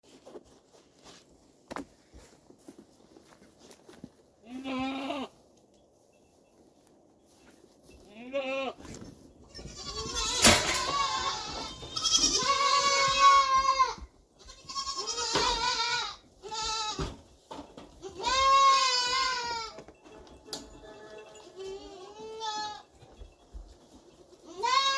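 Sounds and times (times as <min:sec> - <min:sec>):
goat bleating: 0:04.4 - 0:05.4, 0:08.1 - 0:08.8, 0:09.6 - 0:17.1, 0:18.0 - 0:19.8, 0:20.9 - 0:22.8, 0:24.4 - 0:24.9.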